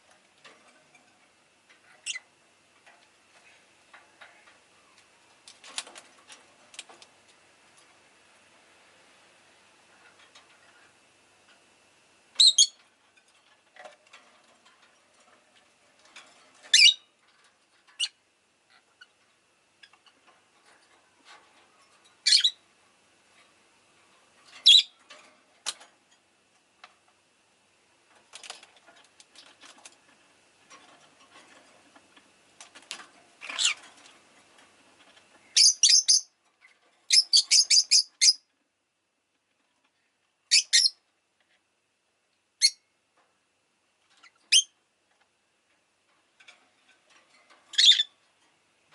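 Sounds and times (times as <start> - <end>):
lovebird chirping: 12.4 - 12.8, 35.6 - 36.3, 37.1 - 38.4.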